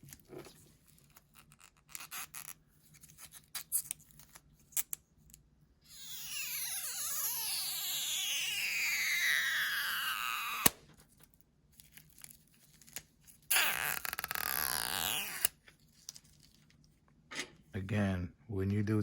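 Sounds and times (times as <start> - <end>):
adhesive tearing squeal: 5.9 - 10.8, 13.5 - 15.6.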